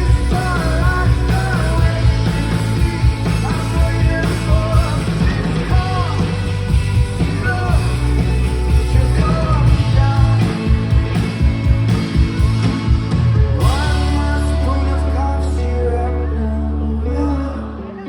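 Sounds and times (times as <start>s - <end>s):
person singing lead vocal: 0.0s - 11.1s, 13.6s - 18.0s
pounding drum beat: 0.0s - 14.2s
live rock band playing: 0.0s - 18.0s.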